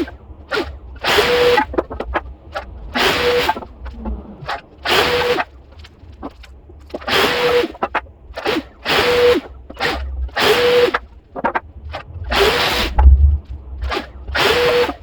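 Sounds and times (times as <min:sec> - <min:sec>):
power drill motor whine: 0:00.0 - 0:05.6, 0:06.9 - 0:11.2, 0:11.9 - 0:15.0.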